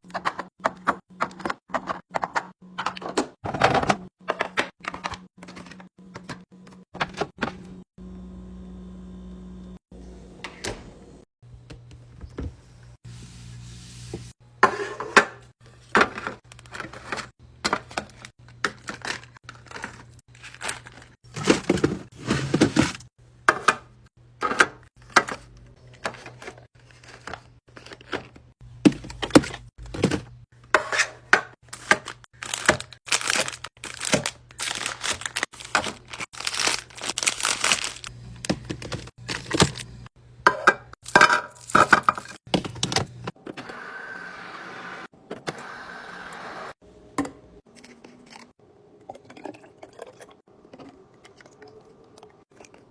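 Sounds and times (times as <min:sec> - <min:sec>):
plastic wrappers crinkling: 0:18.8 - 0:21.2, 0:31.7 - 0:40.1, 0:41.0 - 0:42.4
containers clicking and knocking: 0:27.2 - 0:43.3.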